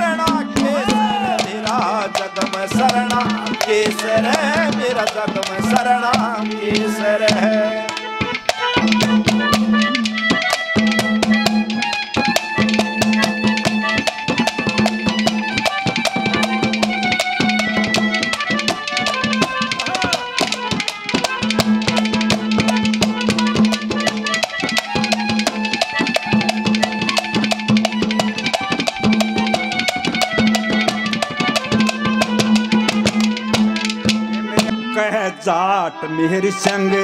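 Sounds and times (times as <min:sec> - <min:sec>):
rapid hand-drum strokes: 0:00.0 - 0:34.8
held melodic notes: 0:00.0 - 0:37.0.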